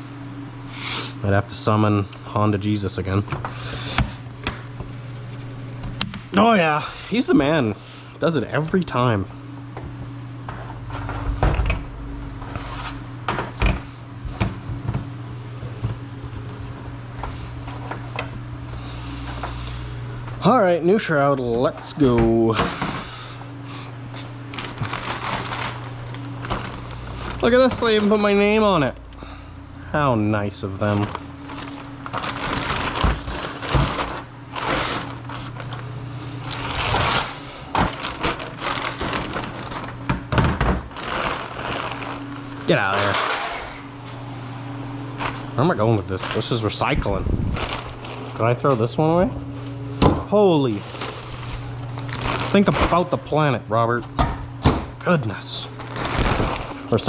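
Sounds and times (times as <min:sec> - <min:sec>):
steady low hum: 0:00.0 - 0:57.0
packaging rustling and crinkling: 0:24.2 - 0:28.4, 0:30.8 - 0:35.8, 0:36.4 - 0:40.1, 0:40.8 - 0:43.7, 0:45.2 - 0:45.5, 0:46.2 - 0:48.4, 0:50.7 - 0:53.2, 0:55.8 - 0:57.0.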